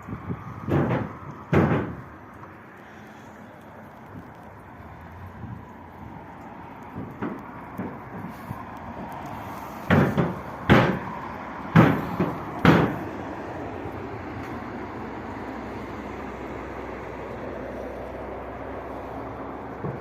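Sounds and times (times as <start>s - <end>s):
loud knocks: 0.6s - 2.1s, 9.8s - 13.0s.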